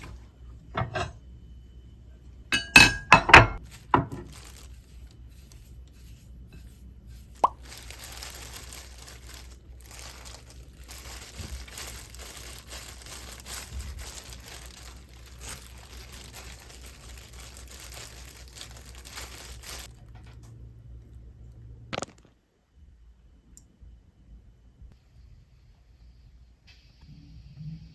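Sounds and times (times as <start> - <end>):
low steady hum: 0.0 - 27.9
material being crumpled: 3.6 - 20.2, 21.9 - 22.3.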